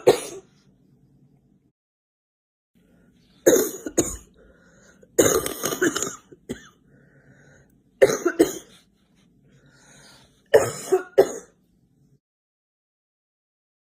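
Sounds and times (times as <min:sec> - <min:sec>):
girl coughing: 0:00.0 - 0:00.5, 0:03.4 - 0:04.4, 0:05.2 - 0:06.8, 0:08.0 - 0:08.8, 0:10.5 - 0:11.6.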